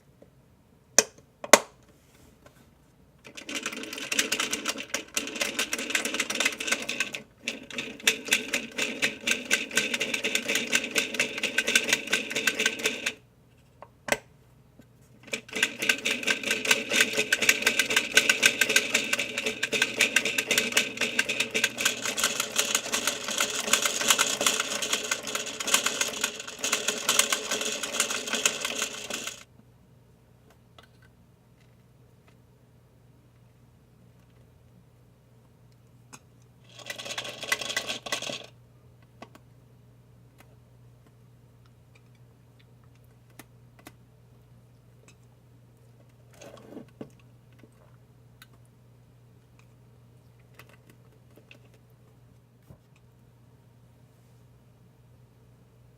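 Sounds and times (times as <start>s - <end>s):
toy washing machine rattling: 3.3s - 13.2s, 15.2s - 29.4s, 36.7s - 38.5s.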